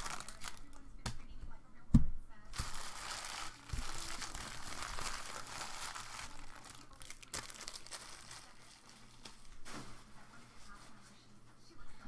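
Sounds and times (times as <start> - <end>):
packaging crinkled and torn: 0.0 - 0.8, 2.5 - 9.7.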